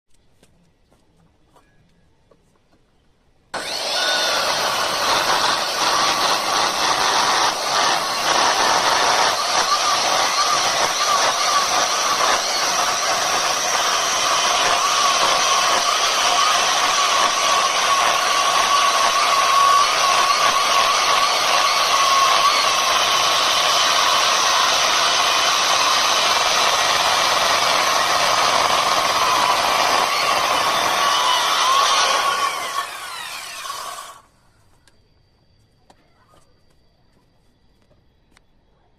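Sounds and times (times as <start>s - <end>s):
electric wood planer running: 3.6s - 34.2s.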